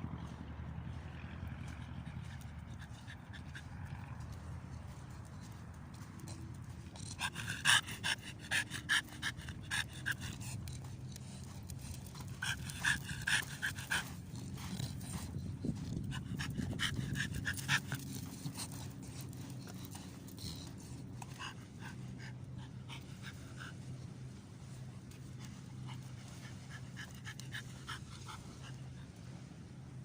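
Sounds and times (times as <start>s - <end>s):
steady low hum: 0.0s - 30.0s
dog panting: 0.1s - 29.4s.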